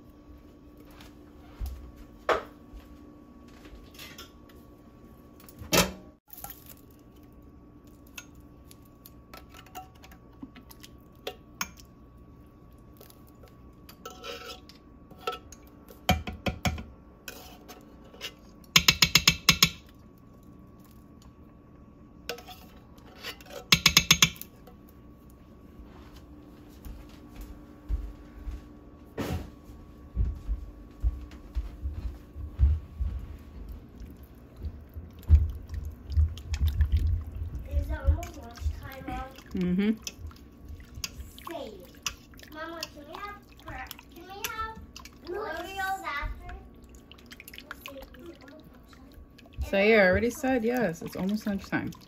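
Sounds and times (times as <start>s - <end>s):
utensils clinking against a pot: 9.3s - 10.3s, 13.8s - 19.9s, 22.3s - 24.7s.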